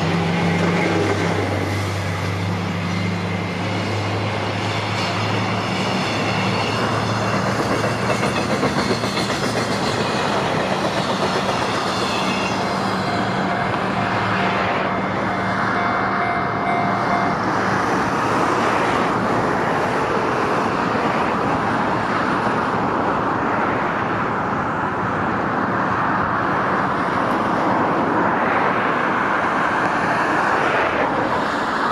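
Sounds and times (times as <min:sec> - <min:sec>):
freight train rolling past: 0:00.0 - 0:31.8.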